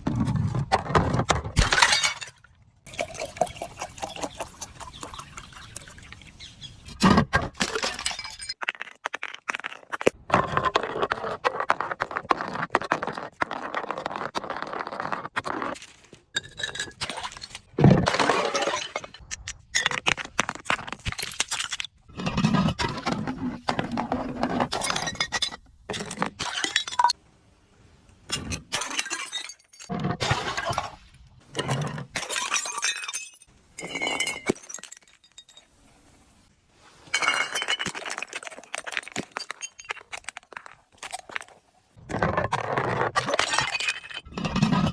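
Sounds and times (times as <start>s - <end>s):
glass bottles shattering: 1.6s - 3.6s, 7.0s - 8.6s, 18.0s - 19.2s, 24.6s - 27.2s, 28.6s - 31.0s, 31.6s - 35.8s, 37.0s - 40.7s, 43.2s - 44.9s.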